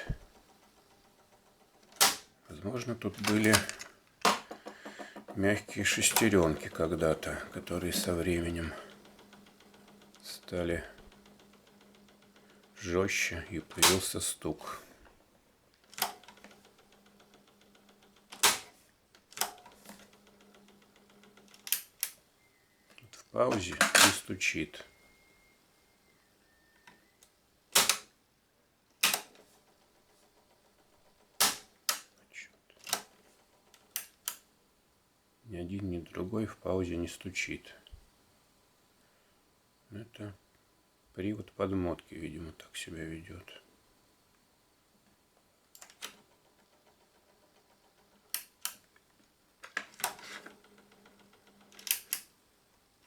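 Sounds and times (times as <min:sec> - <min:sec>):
cassette mechanism clacking: 0:00.0 - 0:14.5, 0:15.7 - 0:22.2, 0:23.0 - 0:24.3, 0:26.8 - 0:28.1, 0:29.0 - 0:34.5, 0:45.8 - 0:49.0, 0:49.6 - 0:52.3
cassette transport double knocks: 0:03.1 - 0:08.2, 0:13.7 - 0:14.1, 0:18.4 - 0:18.8, 0:31.4 - 0:31.7.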